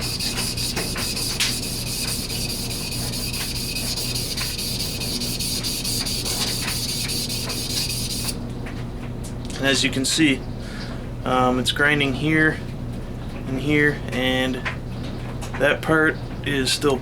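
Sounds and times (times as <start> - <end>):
knife rasping on whetstone: 0.0 - 8.4.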